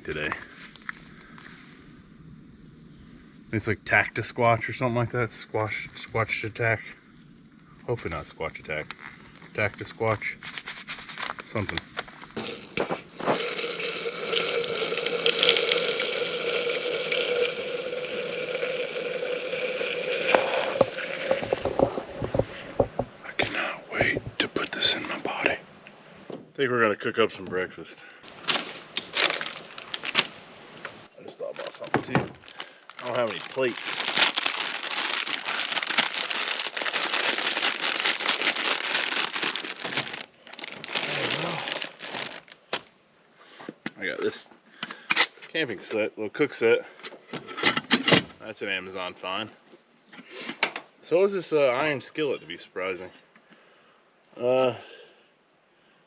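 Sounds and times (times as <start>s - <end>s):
plastic crinkling and rustling: 8.8s - 12.4s, 28.3s - 30.4s, 31.4s - 42.9s
water pouring: 13.3s - 21.8s.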